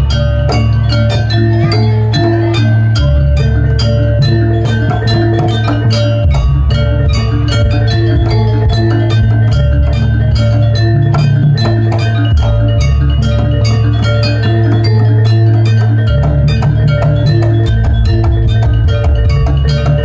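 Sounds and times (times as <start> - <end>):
fast drum strokes: 0.0 - 20.0
ringing metal percussion: 0.0 - 20.0.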